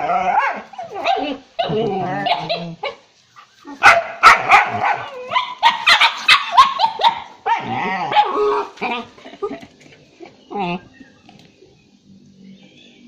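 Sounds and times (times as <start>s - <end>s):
dog barking and yipping: 0.0s - 9.1s.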